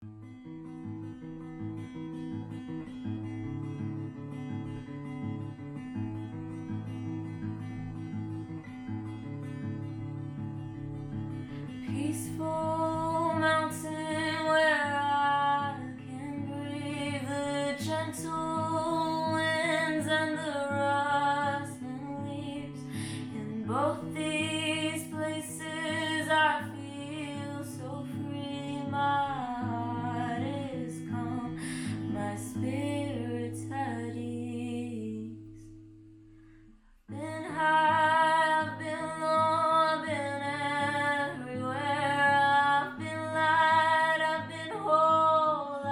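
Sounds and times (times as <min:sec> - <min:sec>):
strummed acoustic guitar: 0:00.0 - 0:45.9
woman singing: 0:11.7 - 0:35.7, 0:37.1 - 0:45.9.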